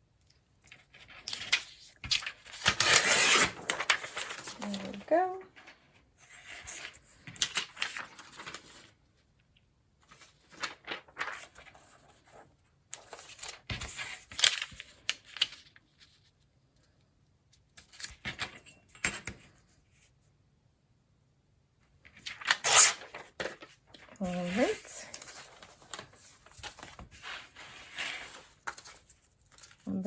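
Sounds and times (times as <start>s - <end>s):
paper rustling and crinkling: 0.6s - 9.1s, 10.0s - 16.9s, 22.0s - 30.0s.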